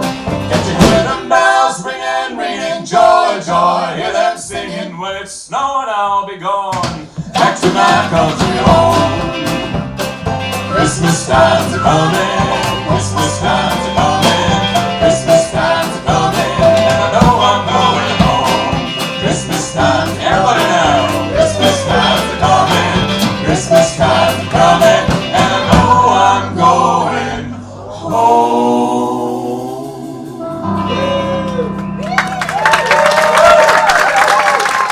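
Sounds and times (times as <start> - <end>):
bluegrass band playing and singing: 0.0 - 5.3, 6.7 - 31.8
audience applause: 31.4 - 34.9.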